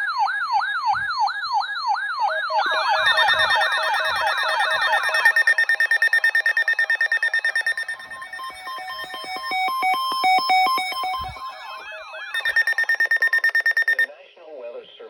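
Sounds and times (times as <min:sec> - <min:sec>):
rapid pulsing beep: 0:02.4 - 0:14.1
steady high tone: 0:02.5 - 0:14.1
stepped beeps changing pitch: 0:02.5 - 0:14.1
swooping tone: 0:02.5 - 0:14.1.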